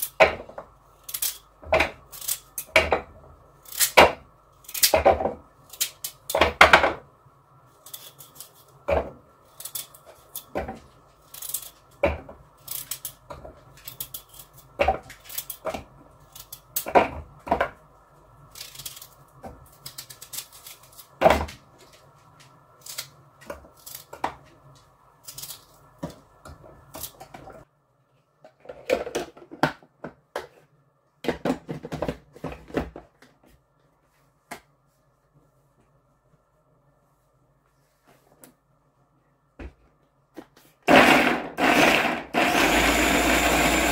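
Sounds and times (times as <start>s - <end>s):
objects knocking and clattering: 2.7s - 3.2s, 4.8s - 5.5s, 28.4s - 30.6s, 31.2s - 33.4s.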